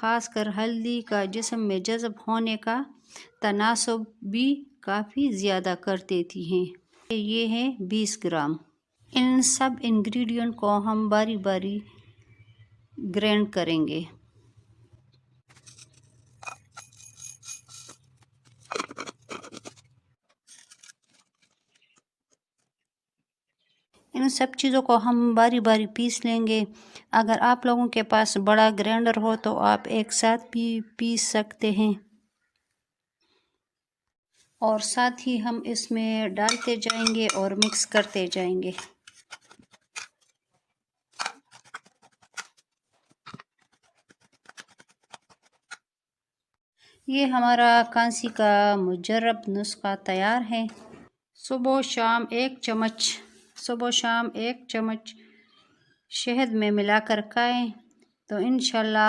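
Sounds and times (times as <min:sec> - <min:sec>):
scraping and rustling of spices: 0:15.5 - 0:22.6, 0:36.4 - 0:40.5, 0:41.1 - 0:45.8.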